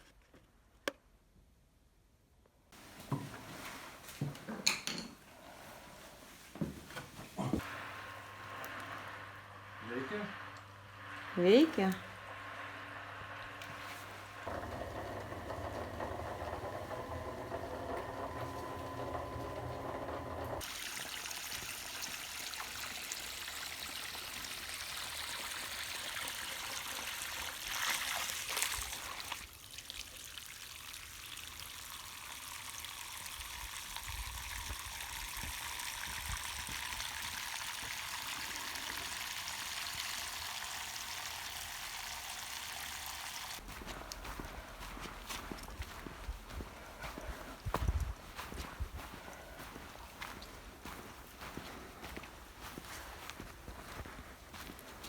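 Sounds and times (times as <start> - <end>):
water pump humming: 5.3 - 55.0
water pouring out: 20.6 - 43.6.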